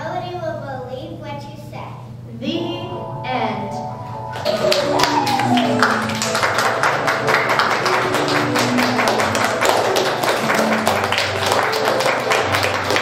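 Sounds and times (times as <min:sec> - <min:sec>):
music with short held notes: 0:02.4 - 0:13.0
audience clapping: 0:04.3 - 0:13.0.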